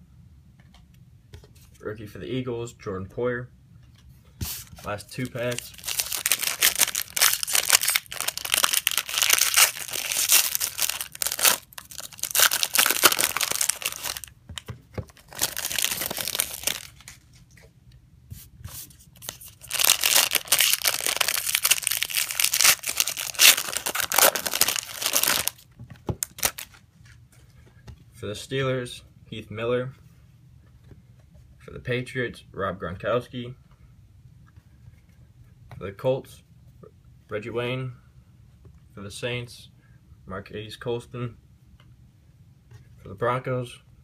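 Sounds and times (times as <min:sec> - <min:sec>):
wrappers tearing and crinkling: 0:05.1 - 0:14.3, 0:15.1 - 0:17.2, 0:19.2 - 0:25.6, 0:26.2 - 0:26.8.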